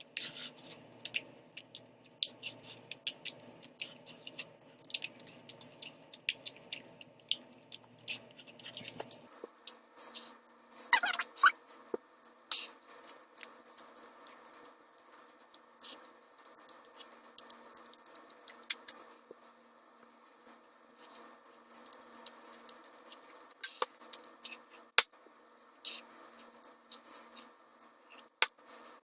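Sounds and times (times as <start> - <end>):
wet chewing of noodles: 0.0 - 24.9, 25.6 - 29.0
mouth clicks and smacks: 0.2 - 19.1.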